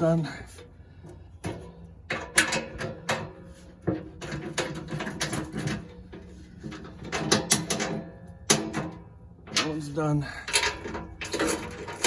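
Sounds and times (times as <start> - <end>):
tools knocking on metal covers: 1.4 - 9.8.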